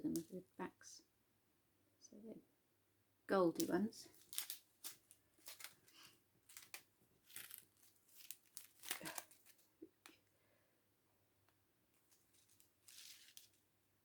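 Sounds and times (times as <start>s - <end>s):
plastic bags crinkling: 4.1s - 9.7s, 12.1s - 13.6s.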